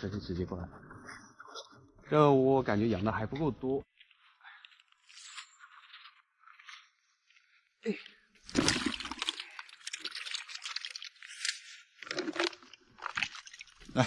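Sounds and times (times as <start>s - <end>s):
water splashing and pouring: 8.4s - 14.0s.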